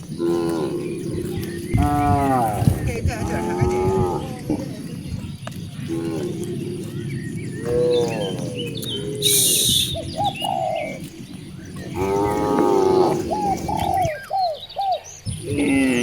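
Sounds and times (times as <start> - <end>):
faint bird chirps: 0.0 - 16.0
cattle mooing: 0.1 - 4.8, 11.9 - 14.1.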